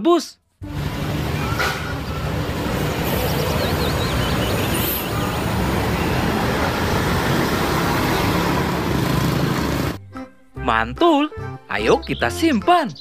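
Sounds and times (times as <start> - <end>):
low engine rumble: 0.6 - 10.0
road noise hiss: 0.7 - 10.0.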